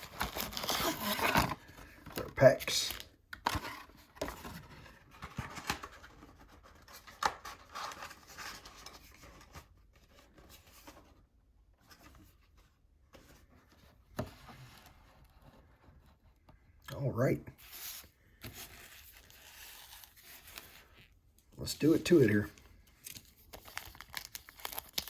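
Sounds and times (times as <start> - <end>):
cards and foil wrappers rustling: 0.0 - 9.5, 17.9 - 25.0.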